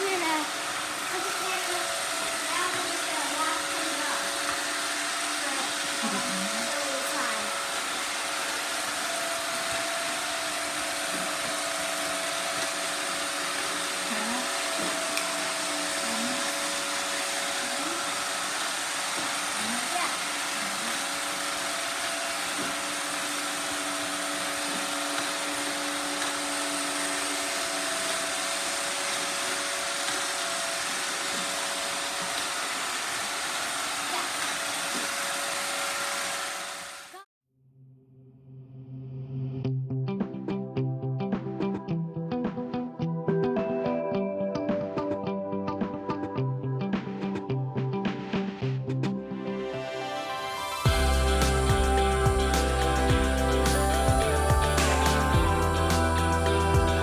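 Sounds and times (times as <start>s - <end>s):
robot vacuum motor whir: 0.0s - 37.3s, 50.4s - 57.0s
even hiss: 50.6s - 57.0s.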